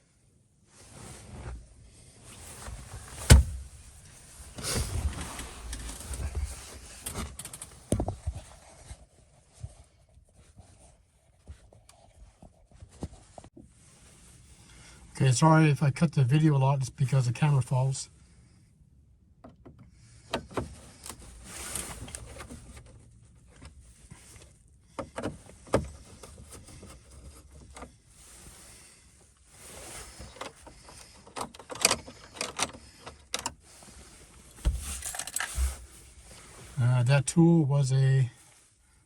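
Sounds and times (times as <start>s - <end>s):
clicks and knocks of tools: 34.7s - 35.8s.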